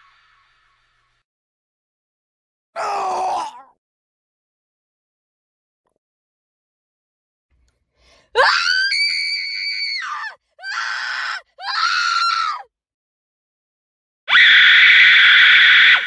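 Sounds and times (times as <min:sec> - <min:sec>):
person screaming: 0:02.8 - 0:03.7.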